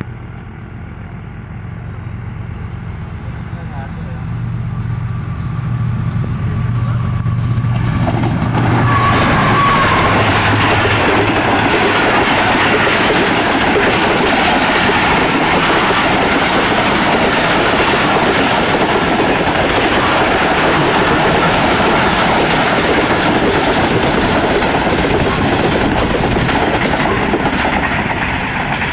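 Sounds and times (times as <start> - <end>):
train coaches rushing past: 1.0 - 28.9
wheels clattering over rail joints: 7.7 - 28.9.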